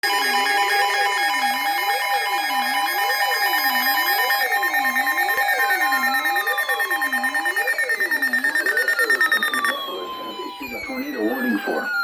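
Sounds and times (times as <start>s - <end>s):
steady and pulsing alert beeps: 7.0s - 12.0s.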